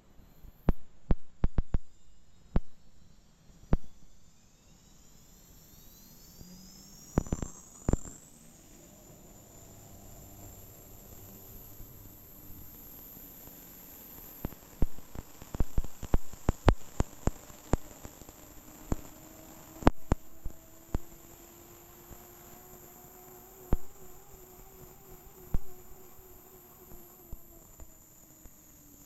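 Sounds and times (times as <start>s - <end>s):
faint steady hum: 0.0s - 29.0s
rising low tone: 7.7s - 12.9s.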